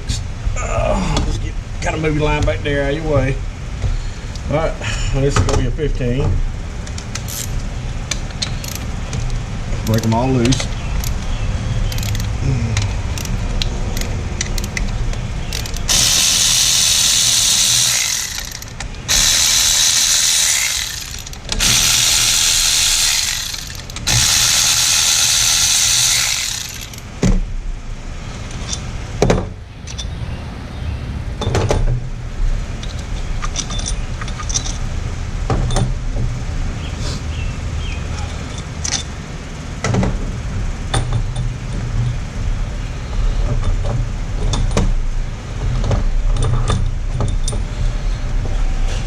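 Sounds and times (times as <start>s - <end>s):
power tool running: 15.9s - 27.1s
metal clicks and knocks: 32.8s - 34.8s, 38.5s - 39.1s.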